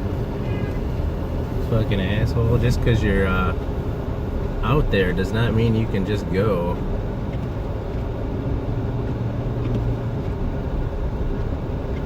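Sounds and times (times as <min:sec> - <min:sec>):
car engine and road rumble: 0:00.0 - 0:12.0.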